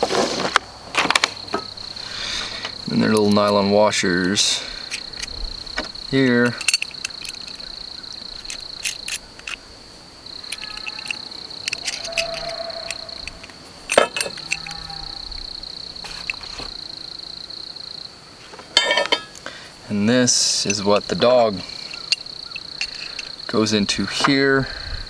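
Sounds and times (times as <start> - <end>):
high insect trill: 0.0 - 25.0
small hardware clicking and clinking: 2.9 - 9.7, 10.4 - 15.0, 16.0 - 16.7, 18.8 - 19.5, 20.6 - 23.4.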